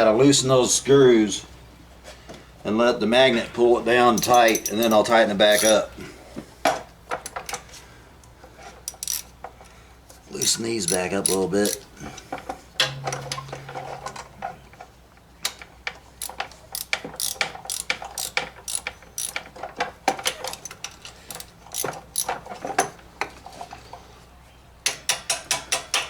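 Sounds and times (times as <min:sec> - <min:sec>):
ratchet wrench clicking: 0:04.2 - 0:05.9, 0:08.9 - 0:09.3, 0:10.4 - 0:11.9, 0:16.2 - 0:19.4, 0:20.4 - 0:22.3.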